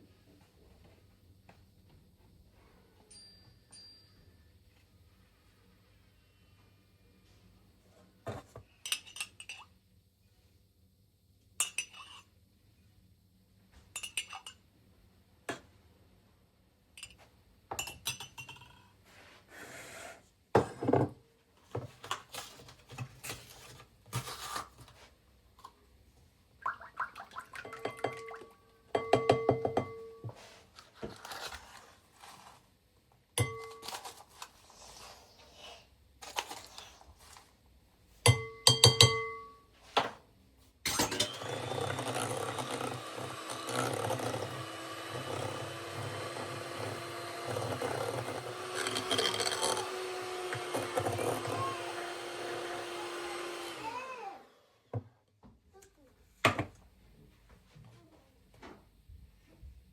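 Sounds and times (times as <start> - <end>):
dishes and utensils clinking: 8.8 - 9.7, 11.6 - 12.3, 14.0 - 14.6, 17.0 - 18.9, 27.6 - 30.5, 38.3 - 39.6, 40.9 - 41.5.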